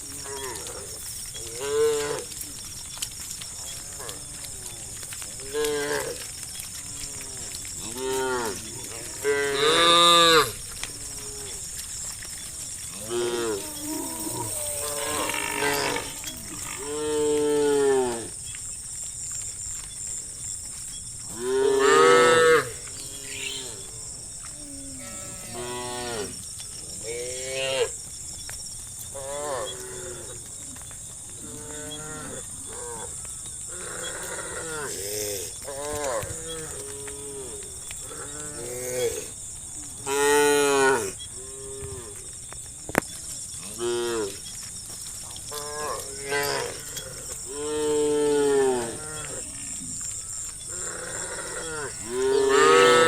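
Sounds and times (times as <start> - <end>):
cattle mooing: 13.0 - 18.3, 24.7 - 26.4, 50.8 - 53.0.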